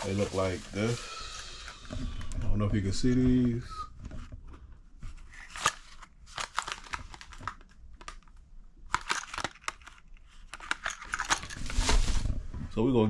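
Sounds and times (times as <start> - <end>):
packaging crinkling: 0.0 - 1.8, 5.4 - 12.3.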